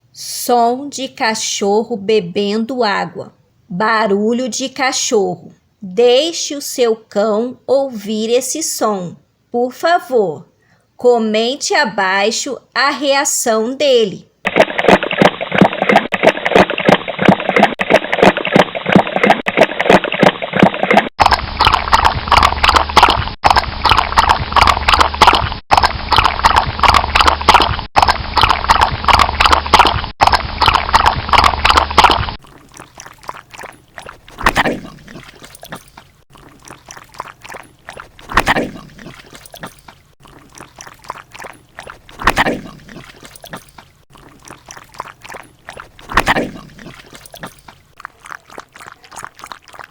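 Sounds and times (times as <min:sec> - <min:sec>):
dogs lapping water: 0:14.5 - 0:49.9.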